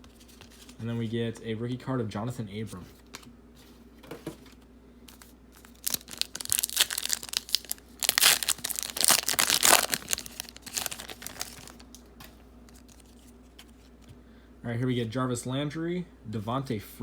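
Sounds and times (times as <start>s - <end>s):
plastic wrapper crinkling and tearing: 5.1s - 12.1s, 12.7s - 14.0s.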